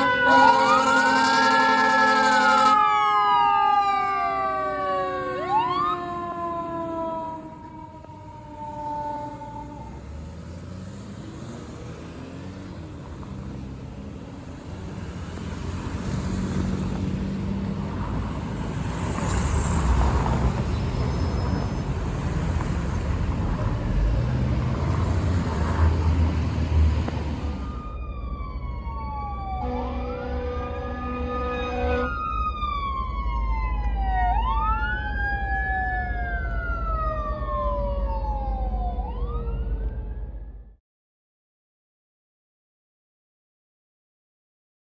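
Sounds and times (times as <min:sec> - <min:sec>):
fire truck air horn: 0:00.0 - 0:04.3, 0:29.5 - 0:32.4
siren sliding down in pitch: 0:00.0 - 0:10.6, 0:27.4 - 0:40.7
siren wailing up and down: 0:00.0 - 0:10.6, 0:27.4 - 0:40.7
fire truck rumble and road noise: 0:00.0 - 0:40.8.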